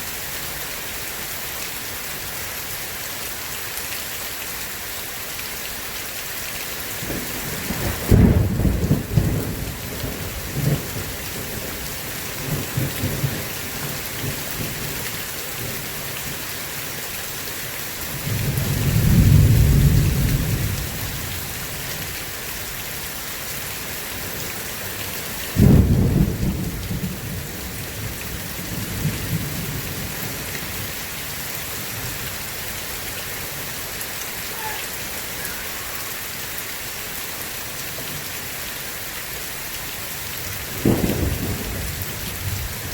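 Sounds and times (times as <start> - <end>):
heavy rain: 0.0 - 42.9
deep rolling thunder rumble: 7.0 - 11.8, 18.1 - 21.3, 25.6 - 30.9, 40.6 - 42.9
thunder clap: 7.1 - 9.8, 40.7 - 42.9.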